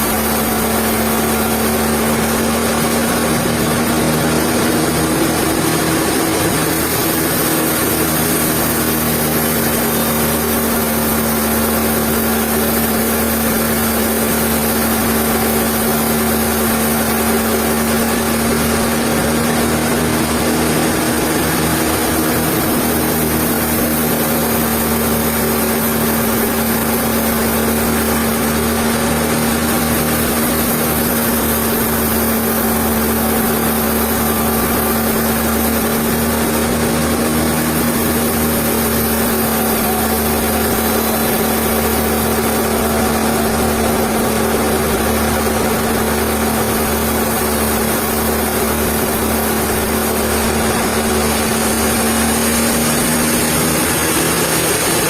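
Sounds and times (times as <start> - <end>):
machinery roar: 0.0 - 55.0
sawmill machinery hum: 0.0 - 55.0.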